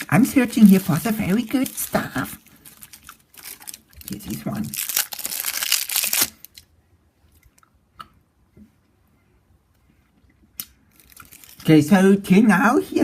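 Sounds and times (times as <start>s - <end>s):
foil wrapper crinkling: 0.0s - 6.7s, 10.9s - 11.8s.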